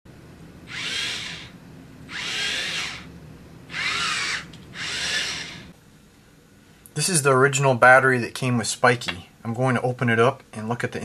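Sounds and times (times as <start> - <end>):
small electric motor whirring: 0.6 - 3.1, 3.7 - 5.8.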